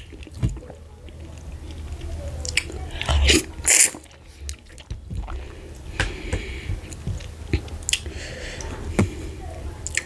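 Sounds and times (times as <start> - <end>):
wet slurping: 2.4 - 5.6.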